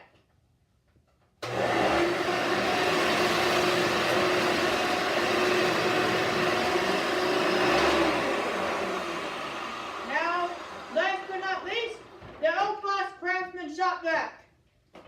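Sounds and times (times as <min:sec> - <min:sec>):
vacuum cleaner motor whining: 0:01.4 - 0:12.5.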